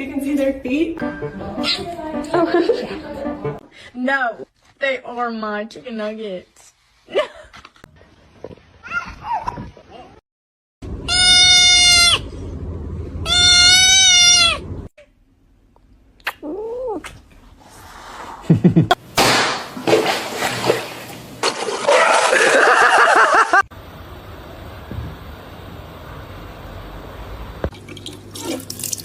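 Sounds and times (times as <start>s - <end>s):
cat meowing: 11.1s - 12.2s, 13.2s - 14.6s
loud scuffling with cat cries: 11.1s - 12.3s, 13.2s - 14.7s.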